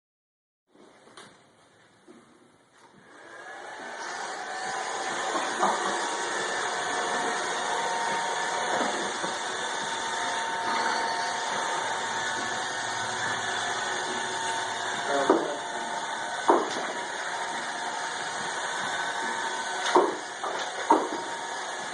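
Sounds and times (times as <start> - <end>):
cooling fans whirring: 3.0 - 21.9.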